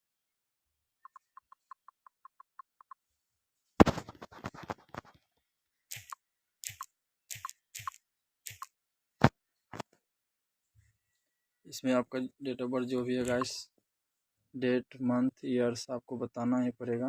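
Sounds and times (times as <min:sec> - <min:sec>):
phone tapping and clicking: 0:01.0 - 0:03.0, 0:05.9 - 0:09.9, 0:13.2 - 0:13.6.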